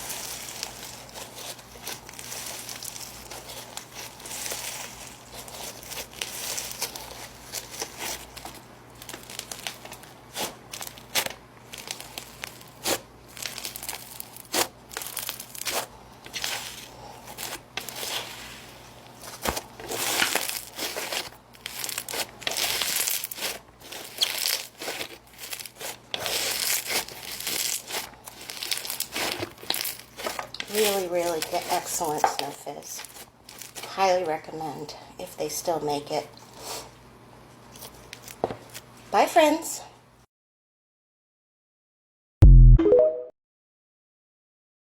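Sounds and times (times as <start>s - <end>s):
slime crackling and crinkling: 0.0s - 34.2s.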